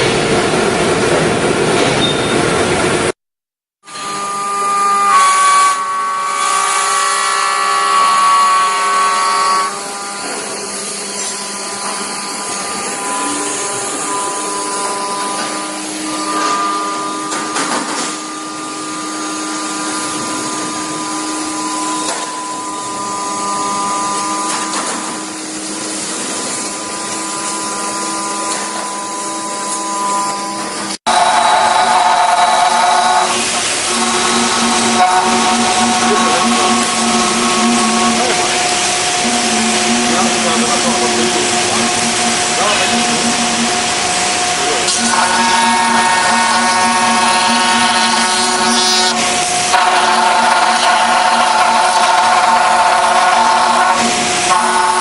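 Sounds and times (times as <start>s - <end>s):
router spindle whining: 3.9s - 55.0s.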